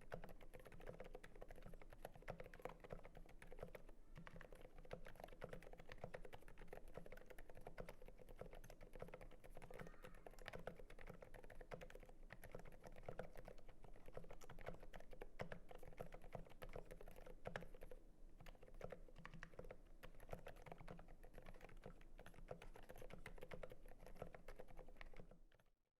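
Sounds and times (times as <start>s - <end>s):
soft mechanical keyboard typing: 0.0s - 25.8s.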